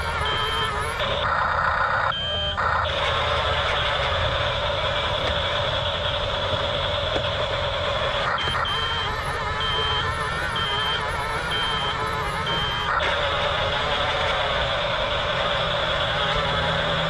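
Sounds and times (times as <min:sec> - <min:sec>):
high reversing beep: 0:00.0 - 0:03.5, 0:08.2 - 0:17.0
toy bulldozer motor whine: 0:00.0 - 0:17.0.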